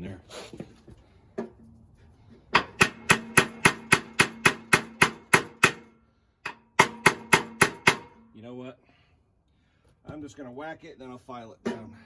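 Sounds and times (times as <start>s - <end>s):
hammer tapping on steel: 2.6s - 8.2s.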